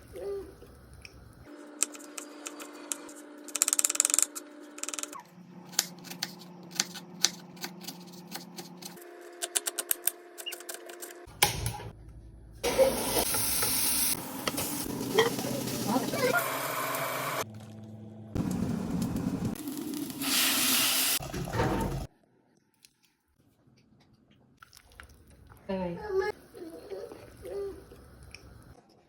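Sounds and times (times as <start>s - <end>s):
food sizzling in a hot pan: 19.6s - 21.2s.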